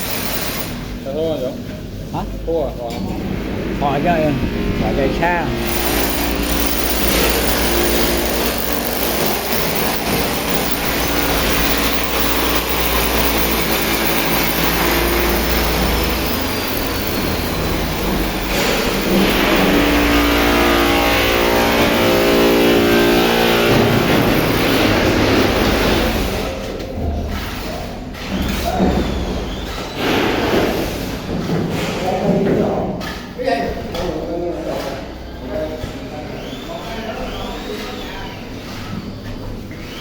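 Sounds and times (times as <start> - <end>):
engine running: 3.2 - 26.5.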